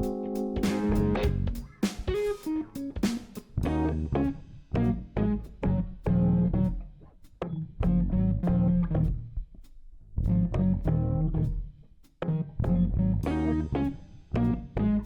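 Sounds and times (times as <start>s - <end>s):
plucked guitar notes: 0.0s - 1.6s
bass guitar line: 0.0s - 9.5s, 10.2s - 15.0s.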